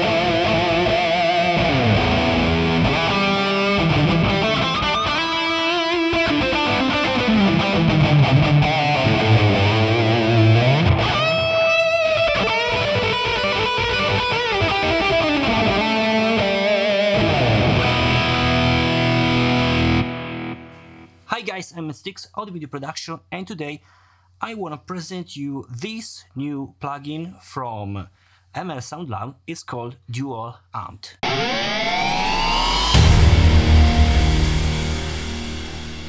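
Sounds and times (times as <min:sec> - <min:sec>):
distorted electric guitar lead: 0:00.0 - 0:21.1, 0:31.2 - 0:36.0.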